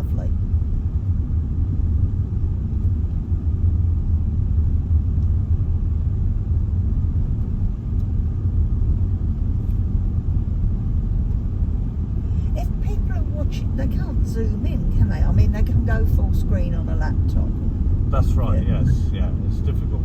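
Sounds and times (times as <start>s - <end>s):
car engine and tyre noise: 0.0s - 20.0s.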